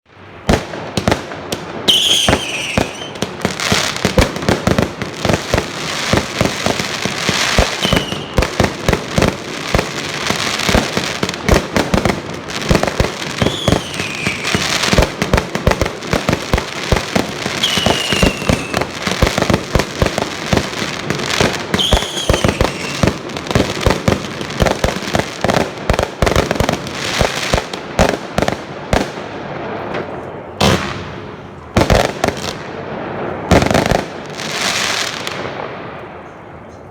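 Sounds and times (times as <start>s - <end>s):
fireworks bangs and pops: 0.3s - 36.2s
falling firework whistles: 1.9s - 3.2s, 7.4s - 8.7s, 13.4s - 15.0s, 17.5s - 19.0s, 21.7s - 23.2s.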